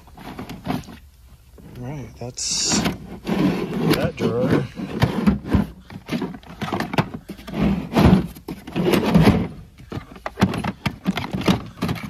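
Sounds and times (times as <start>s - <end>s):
tools shifting in drawer: 2.7s - 12.0s.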